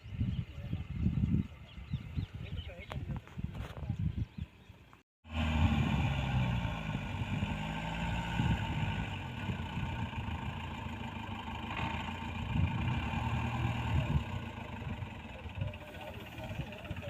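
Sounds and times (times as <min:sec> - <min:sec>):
diesel engine revving: 0:05.2 - 0:17.0.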